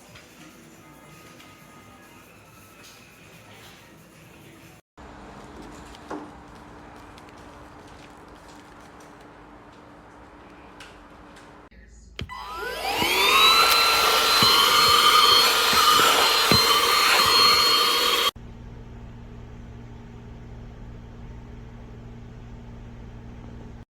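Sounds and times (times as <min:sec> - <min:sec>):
vacuum motor whine: 0:12.2 - 0:18.4.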